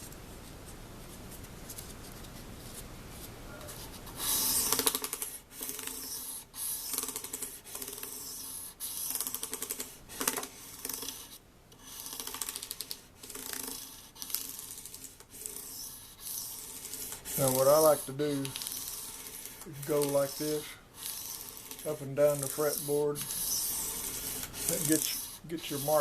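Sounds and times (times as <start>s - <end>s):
sandpaper rubbing on metal frets: 17.3s - 26.0s.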